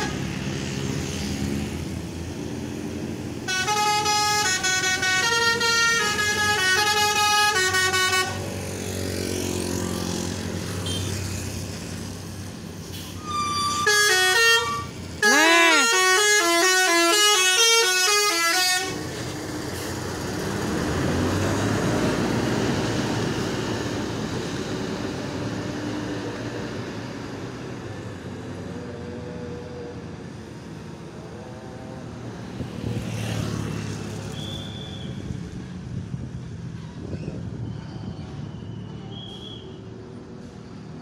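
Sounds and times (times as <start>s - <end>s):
passing vehicle engine and road noise: 0.0s - 41.0s
bus musical horn melody: 3.4s - 8.5s, 13.2s - 19.2s.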